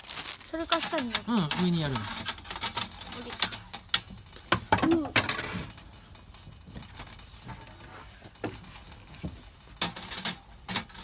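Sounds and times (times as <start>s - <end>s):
metal parts clinking: 0.7s - 4.0s.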